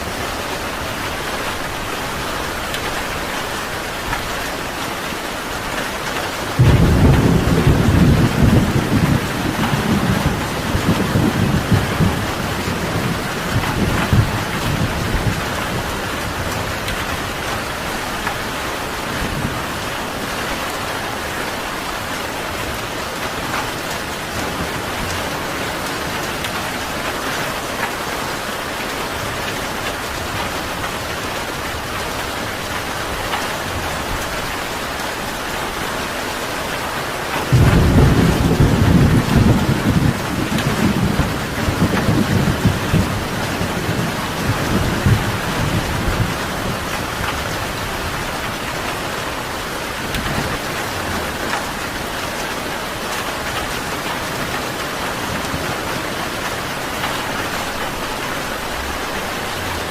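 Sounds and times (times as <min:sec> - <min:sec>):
steady rain hiss: 0:00.0 - 0:59.9
thunder rumble: 0:06.6 - 0:18.5, 0:37.5 - 0:48.9.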